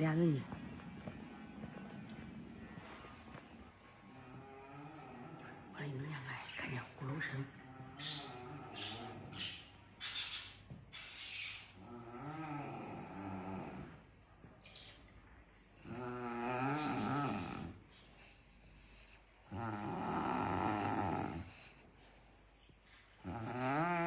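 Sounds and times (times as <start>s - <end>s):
person snoring: 4.2s - 5.7s, 11.9s - 14.0s, 15.8s - 17.8s, 19.5s - 21.7s, 23.2s - 24.0s.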